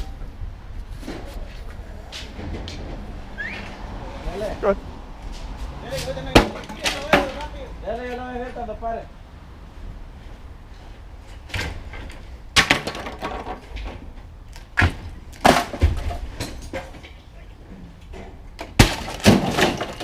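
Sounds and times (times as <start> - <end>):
scrap crashing impacts: 5.2 - 7.7, 11.2 - 17.2, 18.2 - 20.0.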